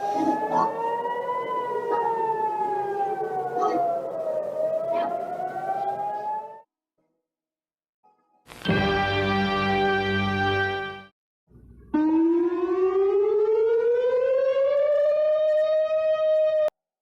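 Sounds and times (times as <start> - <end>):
alarm siren wailing: 0.0 - 6.7, 11.9 - 16.7.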